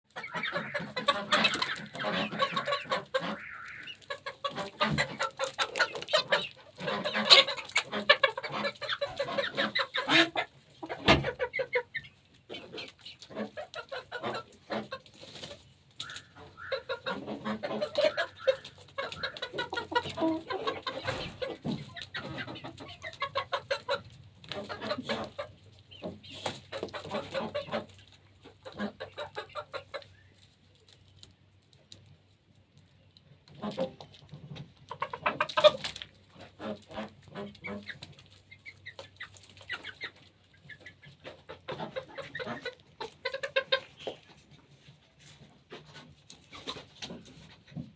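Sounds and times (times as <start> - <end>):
chickens clucking: 0.0 - 47.9.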